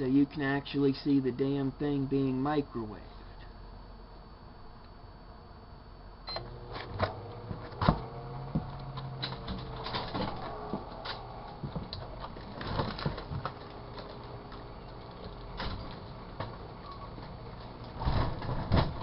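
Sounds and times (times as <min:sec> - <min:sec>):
microwave oven humming: 0:00.0 - 0:19.0
microwave oven beep: 0:06.2 - 0:07.4.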